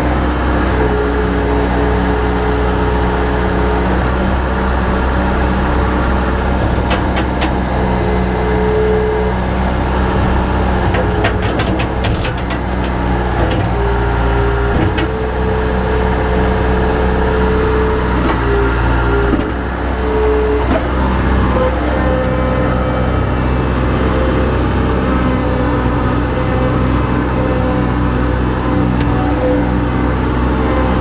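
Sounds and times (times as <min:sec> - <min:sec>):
diesel engine running: 0:00.0 - 0:31.0
metallic rattles and clicks: 0:06.6 - 0:07.7, 0:10.8 - 0:13.8.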